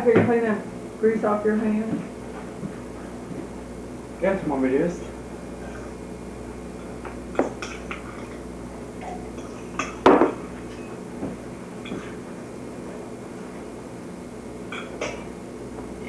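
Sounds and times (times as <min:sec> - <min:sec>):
steady low hum: 0:00.0 - 0:16.0
dishes and utensils clinking: 0:06.8 - 0:11.0, 0:11.8 - 0:12.2, 0:14.7 - 0:15.3.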